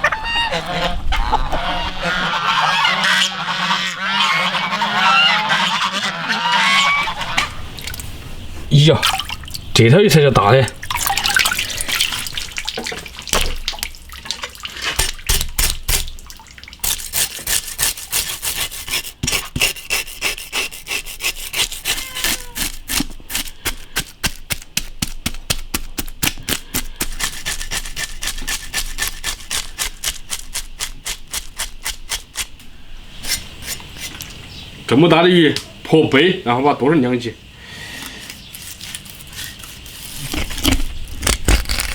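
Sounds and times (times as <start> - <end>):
knife scraping fish scales: 16.8 - 24.9, 26.0 - 32.6, 33.2 - 34.3, 38.0 - 41.9.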